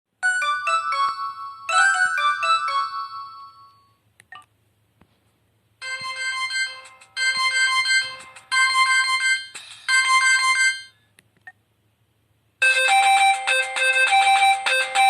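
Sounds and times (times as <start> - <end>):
phone ringtone melody: 0.2 - 4.0, 5.8 - 11.0, 12.6 - 15.0.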